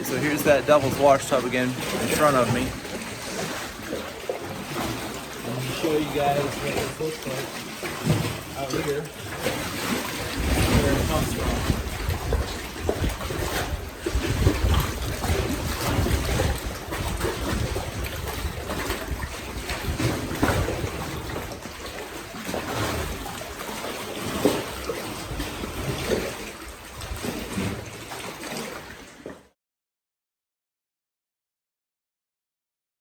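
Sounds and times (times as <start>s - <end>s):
lake waves splashing: 0.0s - 29.5s
wind rumbling on microphone: 9.6s - 23.5s.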